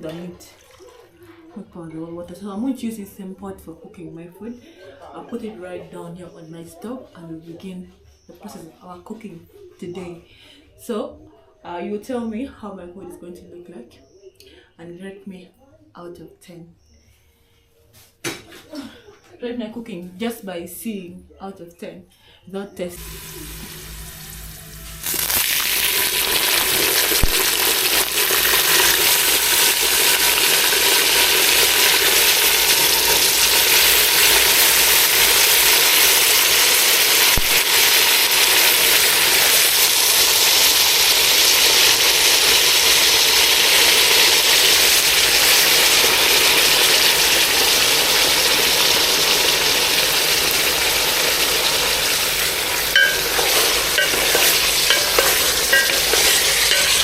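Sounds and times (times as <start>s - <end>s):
food sizzling in a pot: 23.0s - 57.0s.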